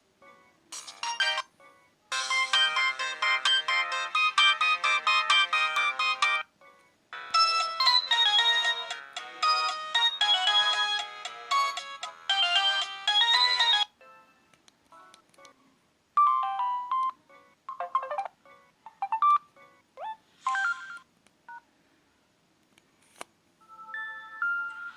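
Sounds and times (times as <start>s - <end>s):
phone ringtone chords: 2.1s - 6.5s, 7.2s - 14.4s.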